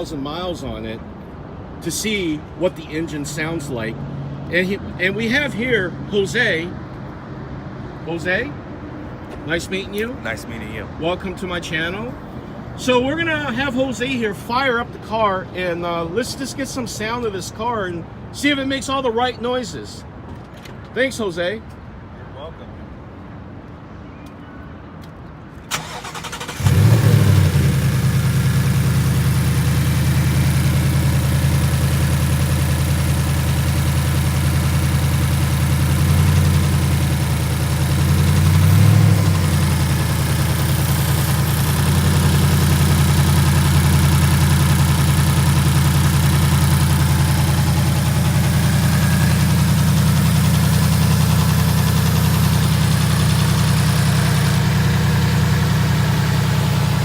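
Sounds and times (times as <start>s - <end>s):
car engine starting and idling: 25.7s - 57.0s.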